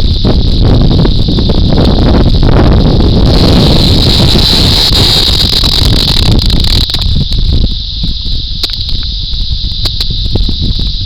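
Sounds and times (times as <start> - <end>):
cicadas droning: 0.0 - 11.0
wind buffeting microphone: 0.0 - 11.0
sharp clicks: 3.3 - 7.5.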